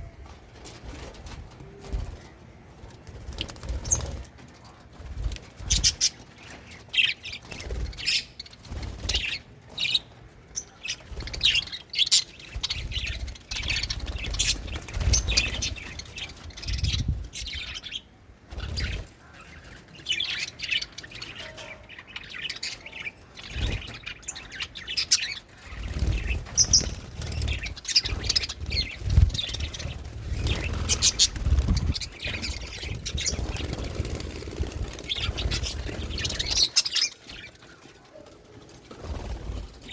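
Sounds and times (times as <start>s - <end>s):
budgerigars chirping: 23.6s - 37.5s.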